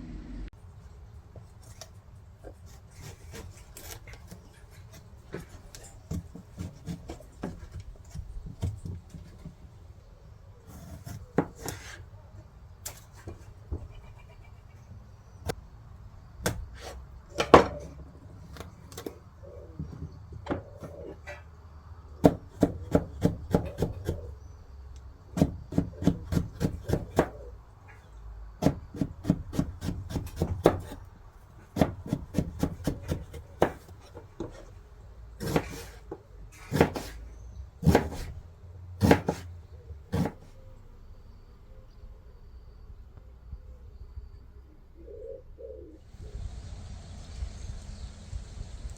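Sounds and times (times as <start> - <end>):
knife chopping on wooden board: 5.3 - 9.4, 10.7 - 12.0, 22.2 - 24.3, 25.4 - 27.4, 28.6 - 31.0, 31.8 - 34.7, 35.4 - 36.0, 36.6 - 37.2, 37.8 - 38.3, 39.0 - 39.4, 40.1 - 40.5.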